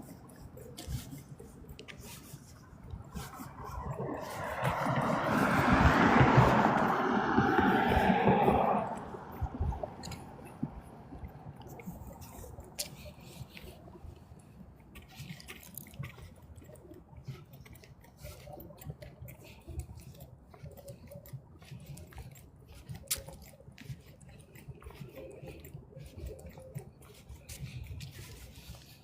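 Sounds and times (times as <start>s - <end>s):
water lapping at shore: 0.0s - 29.0s
small splashes and clicks: 14.4s - 29.0s.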